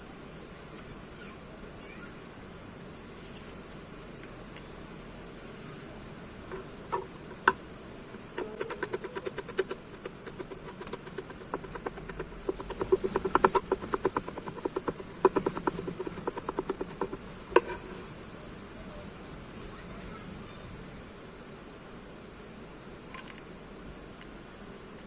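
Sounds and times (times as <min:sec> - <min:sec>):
knife chopping on cutting board: 0:08.4 - 0:17.8.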